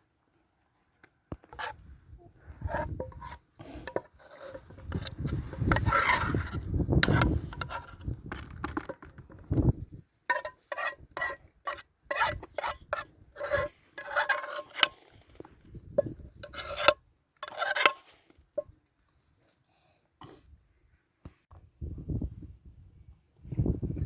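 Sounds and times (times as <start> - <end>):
utensil scraping cookware: 2.6 - 9.0, 10.3 - 15.0, 16.0 - 18.1.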